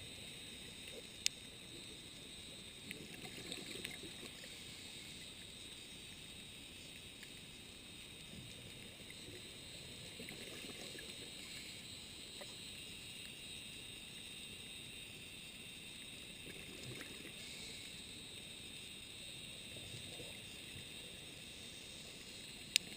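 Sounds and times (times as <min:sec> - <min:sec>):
underwater rumble and hiss: 0:00.0 - 0:22.9
faint clicks: 0:00.8 - 0:01.5, 0:02.8 - 0:05.5, 0:22.2 - 0:22.9.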